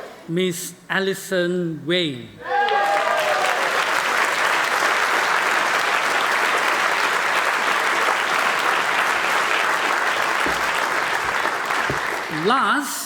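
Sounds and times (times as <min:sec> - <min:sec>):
congregation applauding: 0:02.7 - 0:12.6.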